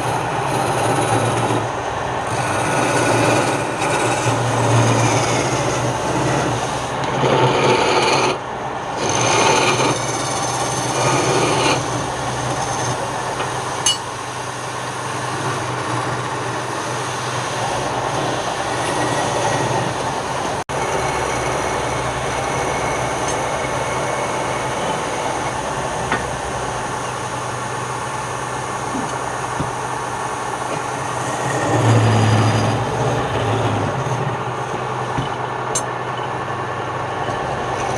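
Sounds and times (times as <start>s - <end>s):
rasping of wood being turned: 0.0s - 1.7s, 2.3s - 8.4s, 9.0s - 13.0s
wood lathe motor humming: 0.0s - 14.0s.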